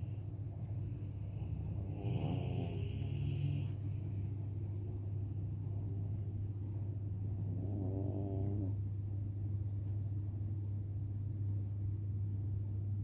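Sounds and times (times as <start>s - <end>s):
dog snoring: 1.8s - 3.8s, 7.3s - 8.8s.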